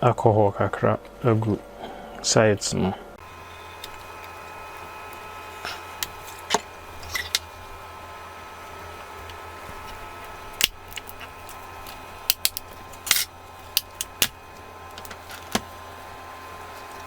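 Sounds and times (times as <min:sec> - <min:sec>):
faint steady hum: 0:00.0 - 0:17.0
hand tools clicking: 0:10.6 - 0:15.6.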